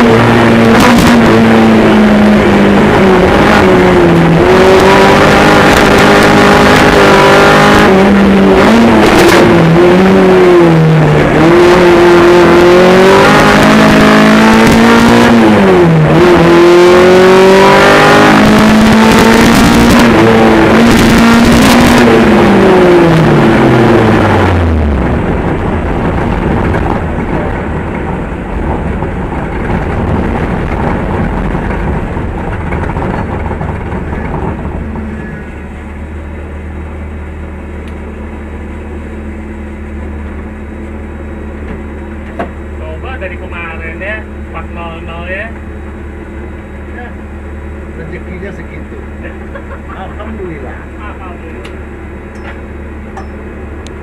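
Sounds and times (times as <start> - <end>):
car engine revving hard: 0.0 - 37.1.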